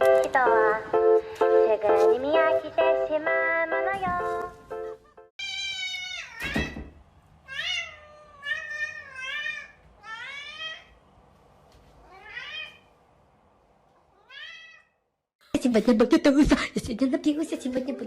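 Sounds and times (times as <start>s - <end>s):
cat meowing: 5.4s - 6.7s, 7.5s - 10.9s, 12.0s - 12.9s, 14.1s - 15.0s.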